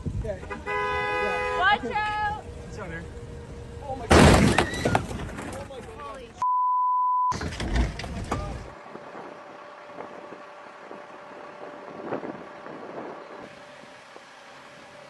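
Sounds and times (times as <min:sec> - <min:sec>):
censor bleep: 0:06.4 - 0:07.3
wind buffeting microphone: 0:08.0 - 0:14.4.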